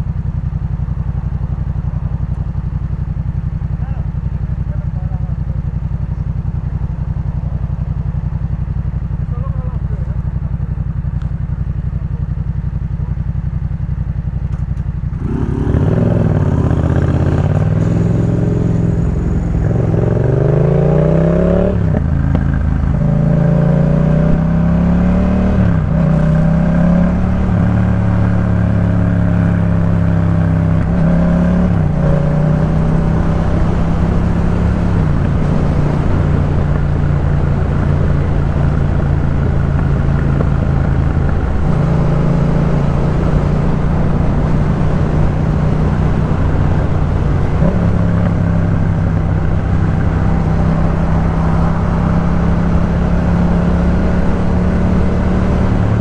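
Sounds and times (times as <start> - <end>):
motorcycle engine accelerating: 0.0 - 56.0.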